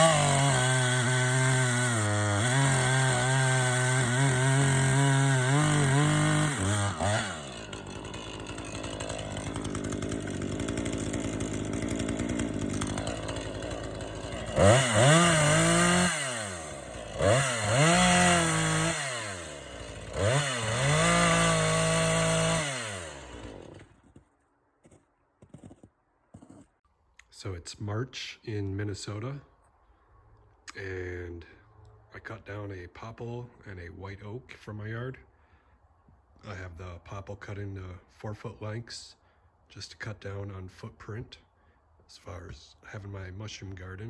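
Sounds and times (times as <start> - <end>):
two-stroke chainsaw revving: 0.0 - 24.2.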